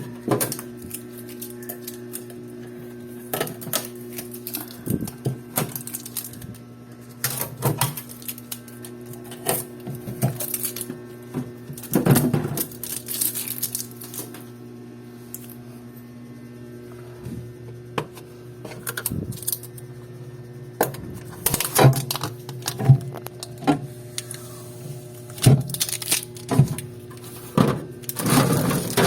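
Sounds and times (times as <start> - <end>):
packaging crinkling and clicking: 0.4 - 2.8, 3.4 - 11.0, 11.7 - 14.5, 18.7 - 19.8, 21.3 - 23.6, 25.3 - 29.0.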